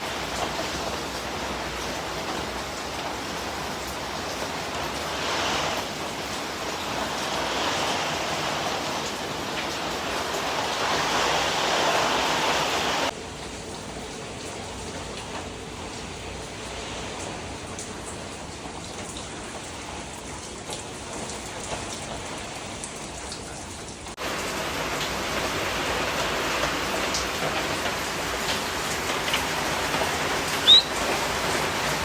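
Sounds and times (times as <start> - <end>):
steady rain falling: 0.0 - 32.0
water drips: 0.0 - 32.0
high chirp: 30.6 - 31.0.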